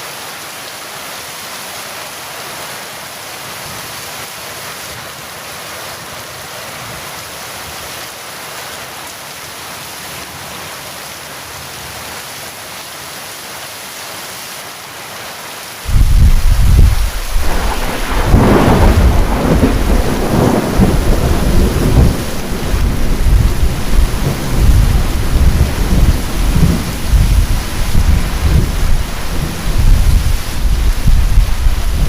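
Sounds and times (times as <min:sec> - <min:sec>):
heavy rain: 0:00.0 - 0:32.0
thunder rumbling: 0:15.9 - 0:32.0.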